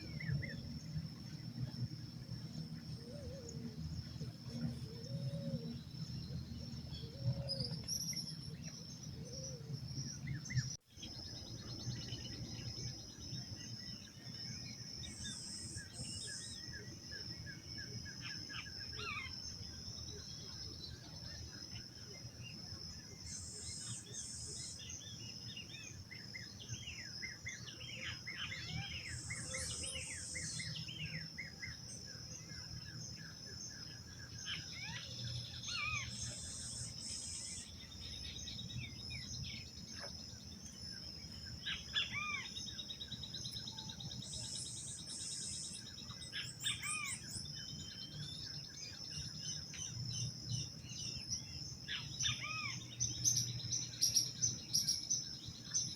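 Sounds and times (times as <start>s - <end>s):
steady high insect drone: 0.0s - 55.9s
birds chirping and calling: 34.3s - 40.1s, 41.5s - 50.3s, 51.1s - 55.9s.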